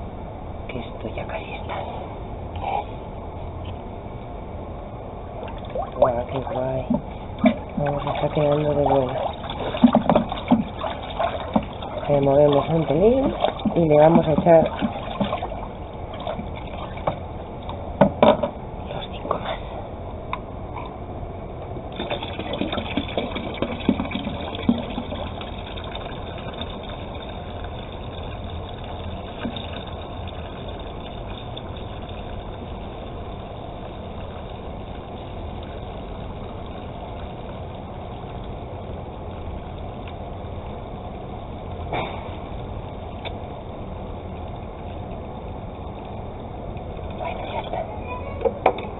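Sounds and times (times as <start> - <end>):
water pouring into container: 5.4 - 17.8, 21.8 - 40.8, 44.3 - 48.1
knocks and clatter of handling: 18.0 - 18.6.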